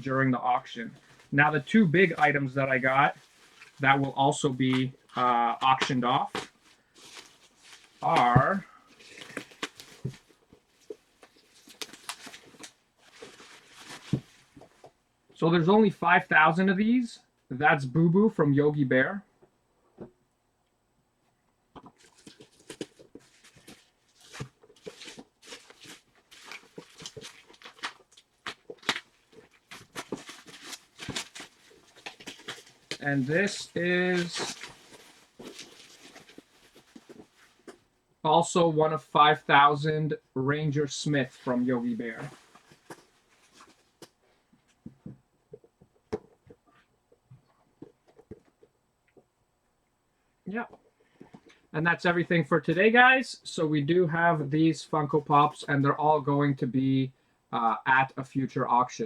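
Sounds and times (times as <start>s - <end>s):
packaging crinkling and rustling: 0.6s - 15.0s, 21.9s - 37.9s, 41.2s - 46.5s.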